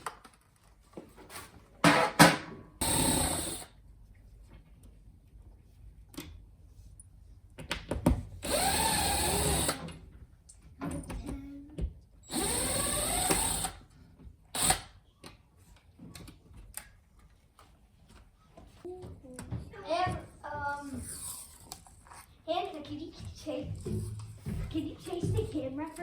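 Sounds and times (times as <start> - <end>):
power drill motor: 2.8 - 3.7, 8.4 - 9.9, 12.2 - 13.9, 14.6 - 15.0.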